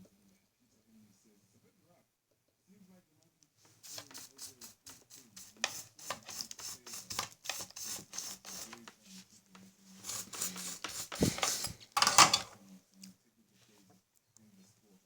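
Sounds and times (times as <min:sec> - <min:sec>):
faint low hum: 0:00.0 - 0:05.6
tools and wires handled on surface: 0:03.8 - 0:09.2, 0:10.0 - 0:12.6.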